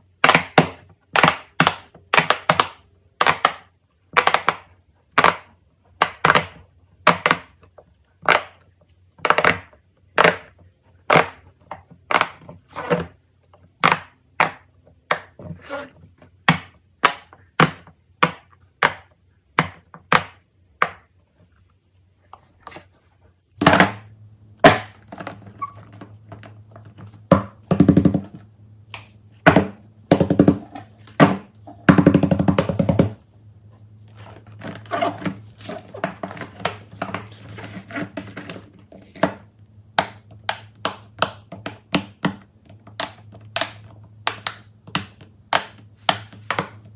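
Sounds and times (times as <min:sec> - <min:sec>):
steady low hum: 0:20.4 - 0:46.9.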